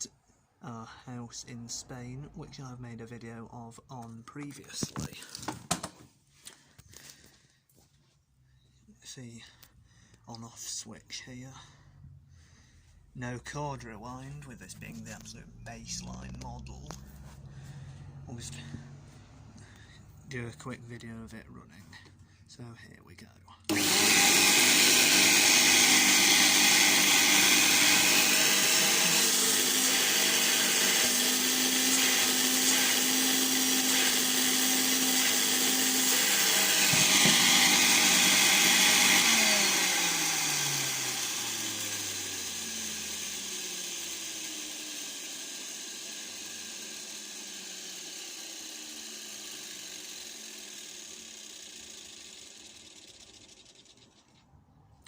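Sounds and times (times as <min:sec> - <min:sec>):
vacuum cleaner motor whining: 0:23.7 - 0:53.3
vacuum motor winding down: 0:23.7 - 0:54.3.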